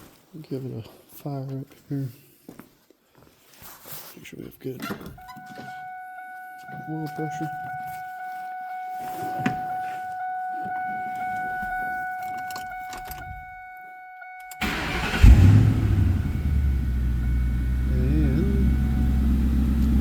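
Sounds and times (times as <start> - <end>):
car engine starting and idling: 14.5 - 20.0
steady high whine: 14.7 - 20.0.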